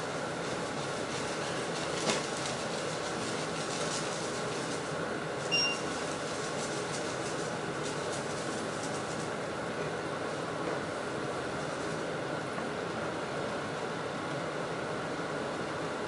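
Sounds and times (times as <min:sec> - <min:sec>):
high beep: 0:05.5 - 0:05.9.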